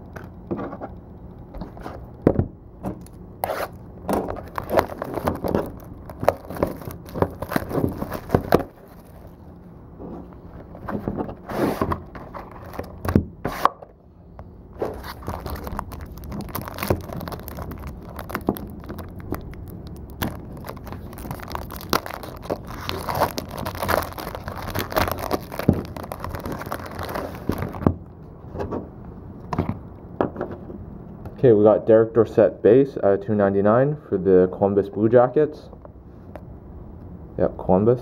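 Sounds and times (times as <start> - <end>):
plastic wrap crinkling: 3.0 - 9.4, 12.2 - 13.1, 14.8 - 27.9
packaging clicks and knocks: 4.1 - 9.1, 14.8 - 28.0.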